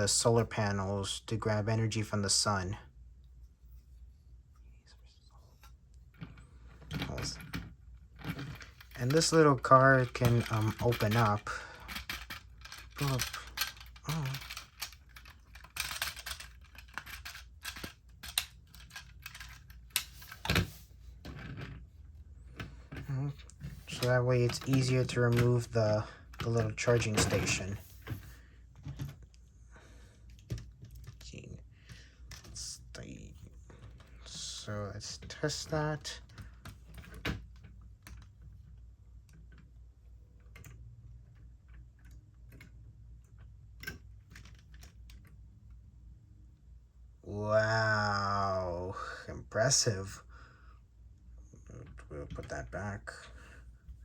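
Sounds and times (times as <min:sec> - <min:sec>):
faint low hum: 0:00.0 - 0:54.0
plastic pieces clicking and rattling: 0:06.1 - 0:21.8, 0:22.6 - 0:28.2.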